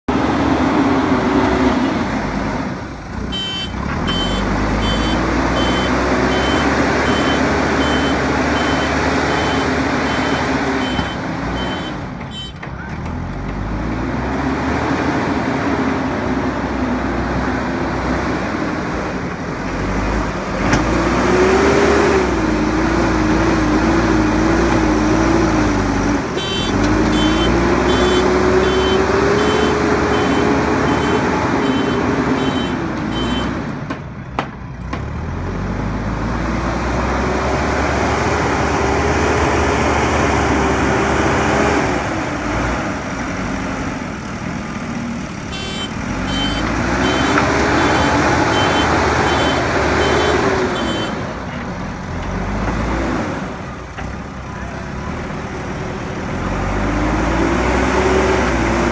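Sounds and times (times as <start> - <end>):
diesel engine working under load: 0.0 - 58.9
reversing alarm beeping: 3.4 - 12.5, 26.4 - 33.6, 45.6 - 51.2.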